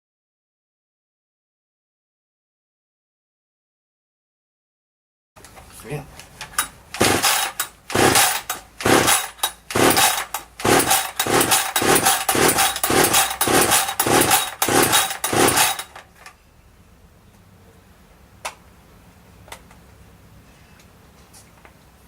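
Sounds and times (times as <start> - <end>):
chainsaw starter cord pulls: 6.6 - 16.1.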